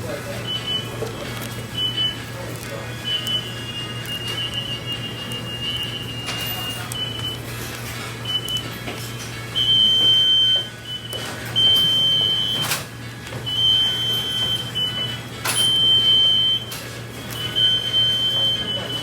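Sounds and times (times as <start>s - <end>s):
electronic beeps: 0.3s - 7.5s.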